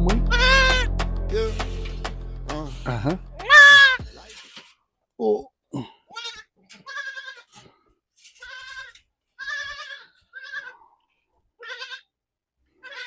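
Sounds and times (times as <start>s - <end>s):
goats bleating: 3.4s - 4.6s, 6.1s - 7.6s, 8.4s - 10.8s, 11.6s - 12.1s, 12.8s - 13.0s.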